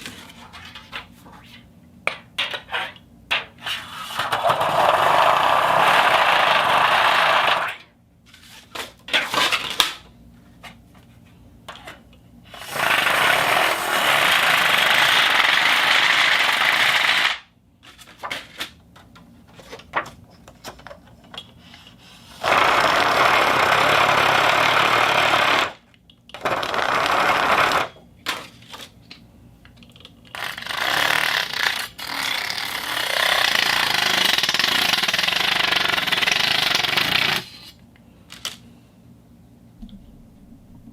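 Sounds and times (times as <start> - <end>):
fishing reel ratcheting whir: 30.4 - 37.7.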